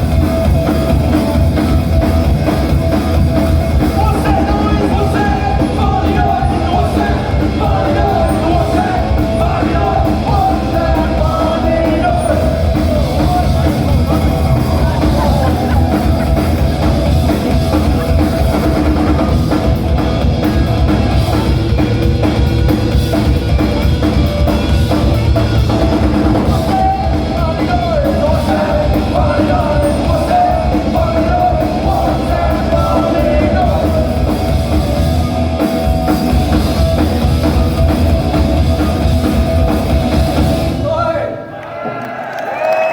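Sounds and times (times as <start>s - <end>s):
drum kit: 0.0s - 41.2s
punk rock band playing live: 0.0s - 41.2s
person singing: 3.8s - 19.4s, 26.4s - 34.6s.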